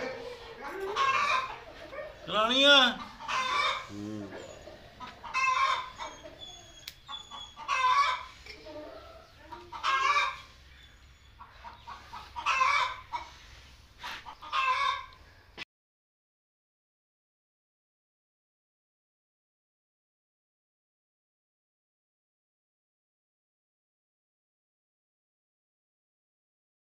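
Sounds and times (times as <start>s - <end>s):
chickens squawking: 0.0s - 15.4s.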